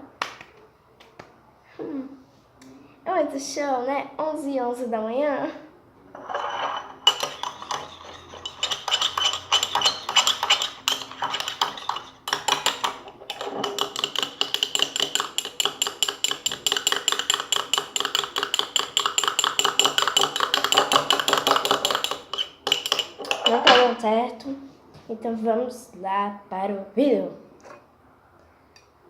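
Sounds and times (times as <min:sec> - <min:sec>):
spoon clinking against container: 0:06.3 - 0:23.8.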